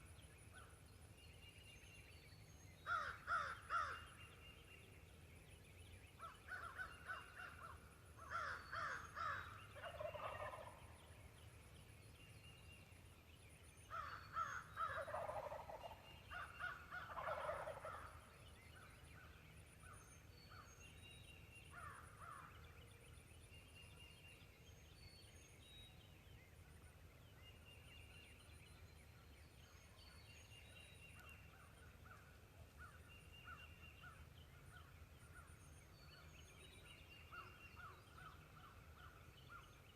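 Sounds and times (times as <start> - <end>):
small birds chirping: 0.0 - 39.9
turkey gobbling: 9.8 - 10.8, 15.0 - 16.0, 17.0 - 17.9.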